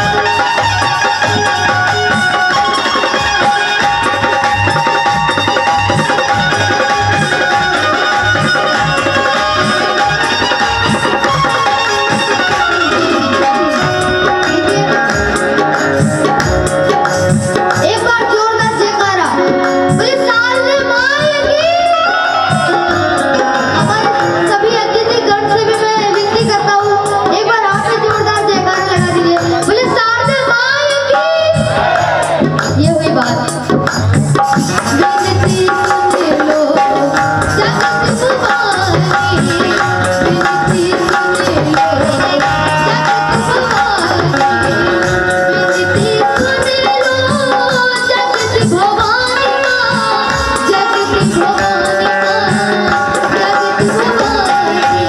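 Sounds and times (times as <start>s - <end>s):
held instrumental notes: 0.0s - 55.0s
tabla rhythm: 0.0s - 55.0s
drum beat: 31.5s - 55.0s
person singing: 34.8s - 55.0s.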